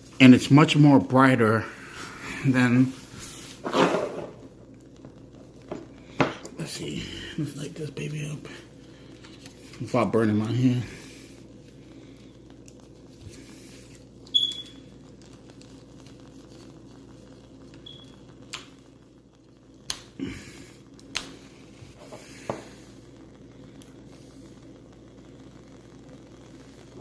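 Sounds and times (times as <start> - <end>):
wooden wick crackling: 0.0 - 27.0
candle lighting click: 17.7 - 18.8.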